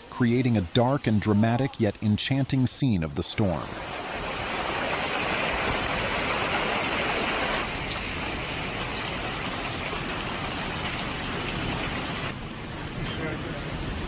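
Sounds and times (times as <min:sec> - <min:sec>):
heavy rain pouring: 0:00.0 - 0:14.0.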